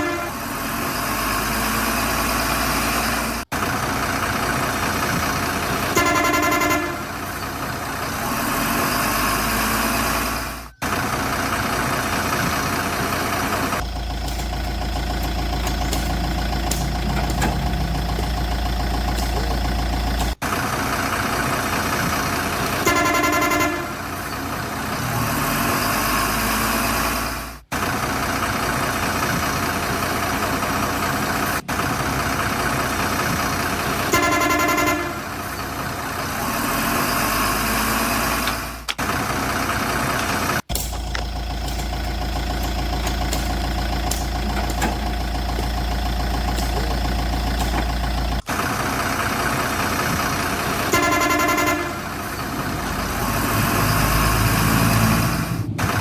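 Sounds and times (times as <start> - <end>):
truck horn honking: 0.0 - 0.8, 5.7 - 11.0, 12.6 - 20.4, 22.6 - 27.5, 33.6 - 39.0, 50.0 - 54.6
truck engine running: 0.0 - 56.0.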